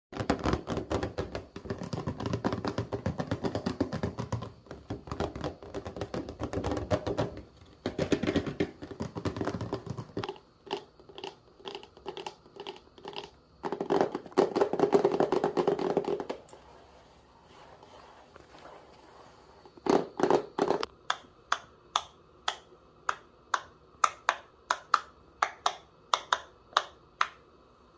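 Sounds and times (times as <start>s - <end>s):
rapid tapping and clicking: 0.2s - 16.5s.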